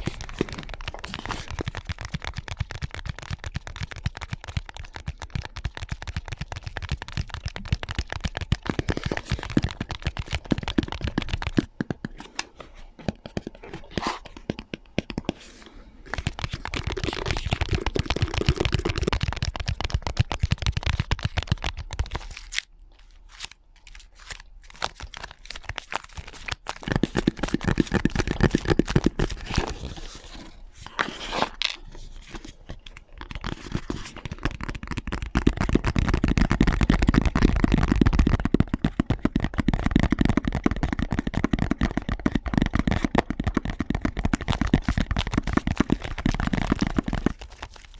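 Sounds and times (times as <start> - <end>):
crinkly scratching: 0.0 - 14.5, 15.2 - 47.9.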